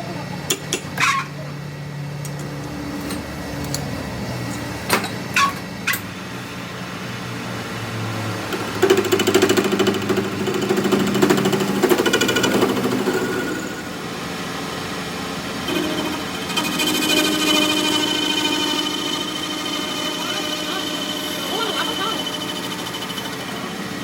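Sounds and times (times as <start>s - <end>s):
power tool rattling: 8.5s - 13.9s, 15.7s - 24.0s.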